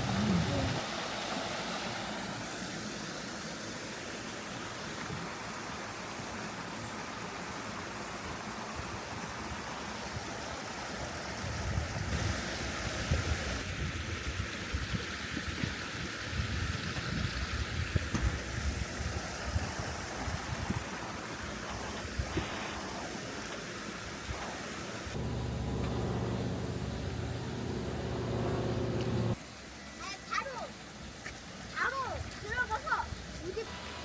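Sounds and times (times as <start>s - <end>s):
stream rushing over rocks: 0.0s - 26.2s, 29.0s - 34.0s
low rumbles: 25.2s - 29.4s.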